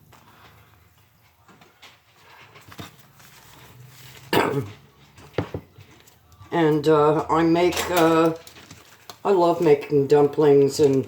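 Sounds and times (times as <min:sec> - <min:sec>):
person coughing: 0:04.3 - 0:04.8.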